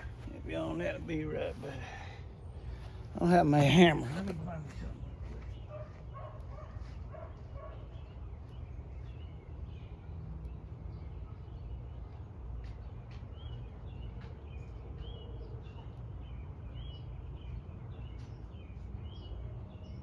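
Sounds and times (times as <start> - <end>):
low outdoor rumble: 0.0 - 20.0
distant dog barking: 5.6 - 8.1.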